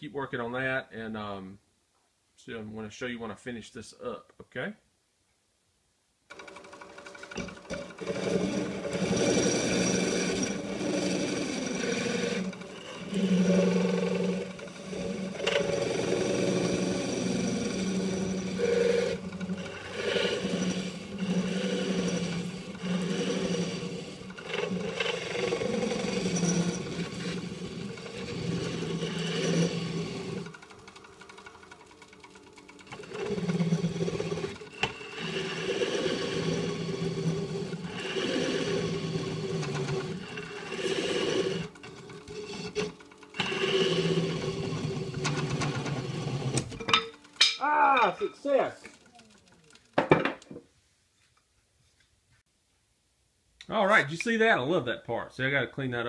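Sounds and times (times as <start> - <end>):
turning tool scraping wood: 6.3 - 50.6
wood lathe motor hum: 6.3 - 50.6.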